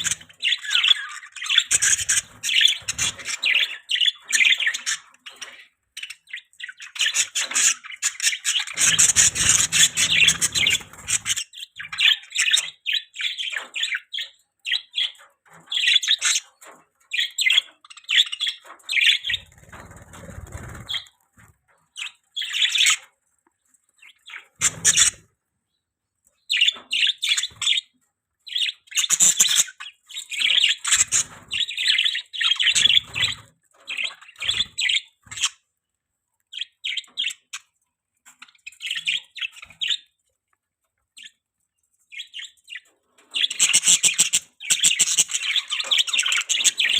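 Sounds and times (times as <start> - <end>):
budgerigars chirping: 0.0 - 21.1, 21.9 - 23.1, 24.0 - 25.3, 26.4 - 27.9, 28.5 - 35.6, 36.5 - 40.2, 42.1 - 46.9.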